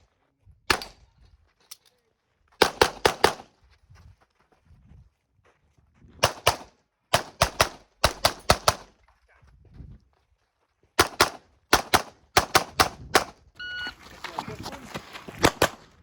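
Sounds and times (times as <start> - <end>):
pistol shots in rapid pairs: 0.7 - 1.0, 2.6 - 3.5, 6.2 - 8.9, 11.0 - 13.4, 15.4 - 16.0.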